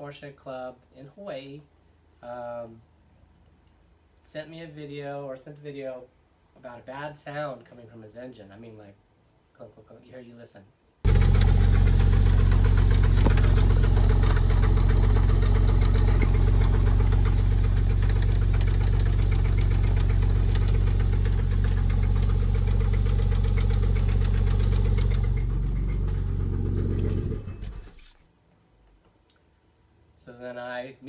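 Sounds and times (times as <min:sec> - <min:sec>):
rapid clunking engine knock: 0:11.1 - 0:27.8
car engine running: 0:11.1 - 0:28.2.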